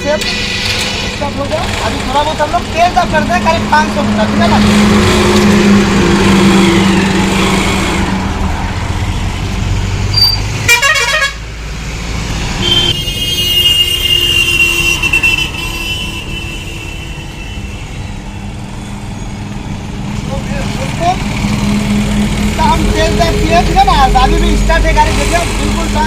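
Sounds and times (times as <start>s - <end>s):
vehicle horns: 10.1s - 11.5s, 12.5s - 18.3s.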